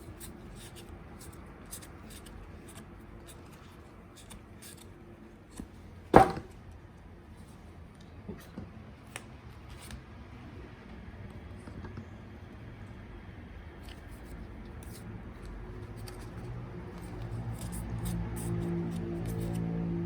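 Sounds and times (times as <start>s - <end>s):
sharp knock on table: 6.2s - 6.5s
playing cards clicking and tapping: 13.8s - 19.7s.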